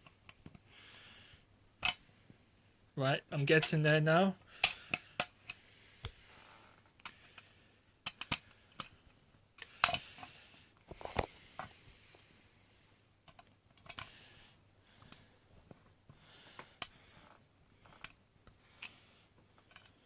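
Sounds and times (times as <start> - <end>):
small plastic parts clicking: 8.0 - 8.9, 9.6 - 10.0.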